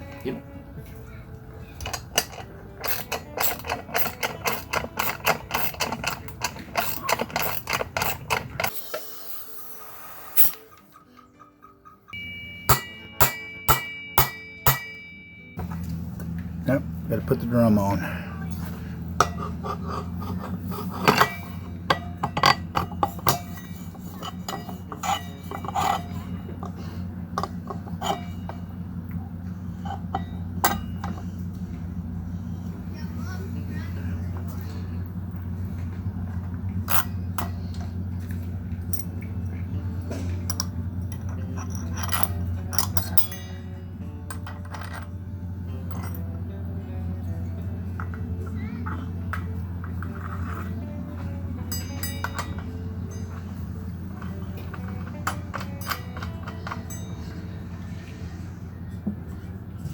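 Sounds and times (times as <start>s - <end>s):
metal parts knocking and scraping: 1.6s - 8.8s, 18.4s - 31.6s, 35.8s - 43.6s, 44.2s - 46.3s, 48.8s - 57.4s
metal tools clinking: 1.6s - 8.8s, 10.4s - 31.6s, 35.7s - 46.6s, 47.2s - 58.0s
steady low hum: 11.9s - 59.9s.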